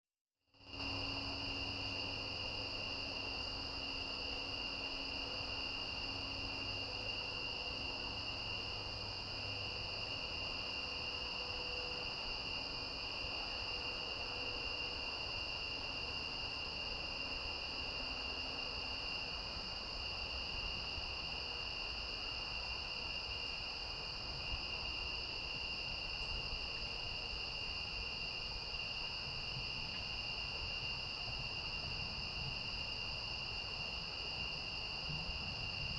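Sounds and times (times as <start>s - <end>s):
crickets trilling: 0.6s - 35.9s.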